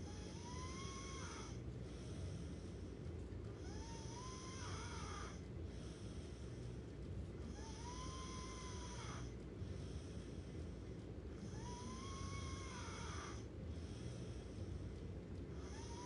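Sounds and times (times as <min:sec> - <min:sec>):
steady low hum: 0:00.0 - 0:16.0
person snoring with whistling tone: 0:00.1 - 0:01.6, 0:03.7 - 0:05.3, 0:07.6 - 0:09.2, 0:11.5 - 0:13.4.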